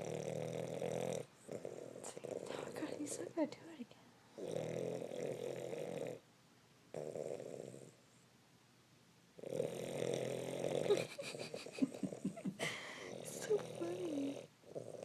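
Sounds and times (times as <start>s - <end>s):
dog snoring: 0.0s - 3.2s, 4.3s - 6.2s, 6.9s - 8.2s, 9.4s - 12.4s, 13.0s - 15.0s.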